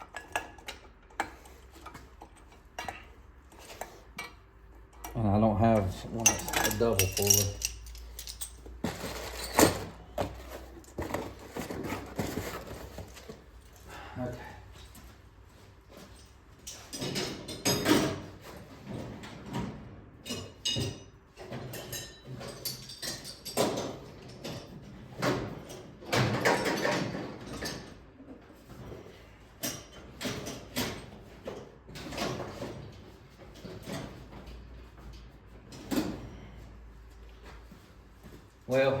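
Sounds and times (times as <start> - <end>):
metal tools clanking on workbench: 5.0 - 10.4.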